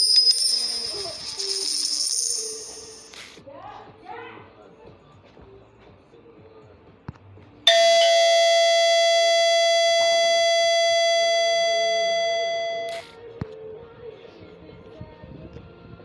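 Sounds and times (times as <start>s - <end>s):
bell-like electronic ringtone chime: 0.0s - 3.2s, 7.7s - 13.1s.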